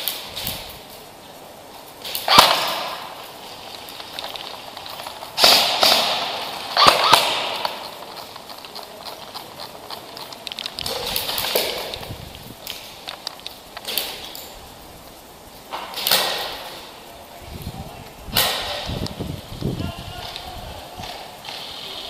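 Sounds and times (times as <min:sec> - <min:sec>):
airsoft gun shots: 0:02.0 - 0:03.2, 0:05.4 - 0:07.9.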